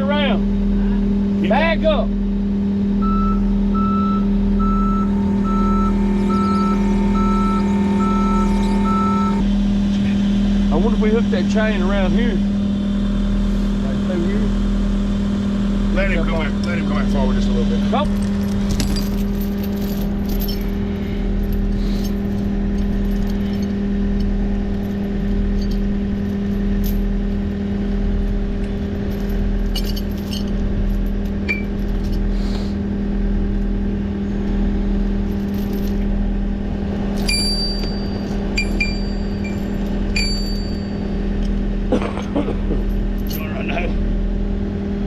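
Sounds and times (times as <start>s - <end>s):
skid steer engine running: 0.0s - 45.0s
short high beeps: 3.0s - 9.4s
metal track clinks and scrapes: 17.9s - 28.0s, 28.6s - 32.5s, 37.1s - 41.6s.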